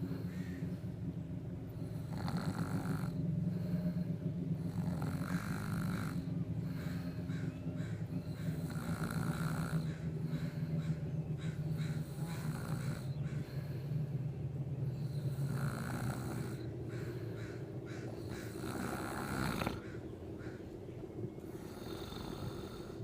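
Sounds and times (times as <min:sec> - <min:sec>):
man snoring: 0:01.8 - 0:04.0, 0:04.6 - 0:07.2, 0:08.2 - 0:10.5, 0:11.8 - 0:13.1, 0:14.9 - 0:16.7, 0:18.2 - 0:19.8, 0:21.5 - 0:23.0.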